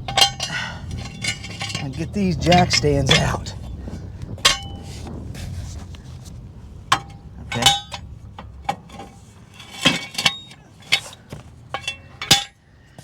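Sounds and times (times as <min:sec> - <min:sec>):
metal jack stands clanking: 0:00.0 - 0:03.6, 0:04.4 - 0:05.0, 0:06.9 - 0:12.6.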